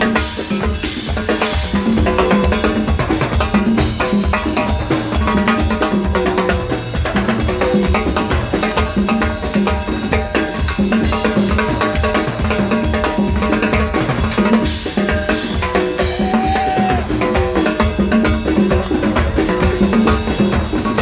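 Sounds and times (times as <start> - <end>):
latin rock band playing live: 0.0 - 21.0
rimshot drum strikes: 0.0 - 21.0.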